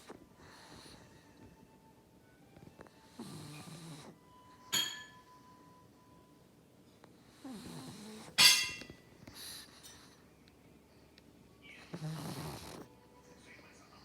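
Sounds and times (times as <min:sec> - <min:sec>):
dog snoring and snorting: 0:02.9 - 0:04.3, 0:07.2 - 0:08.4, 0:11.8 - 0:12.9
short ringing clink: 0:04.7 - 0:05.2.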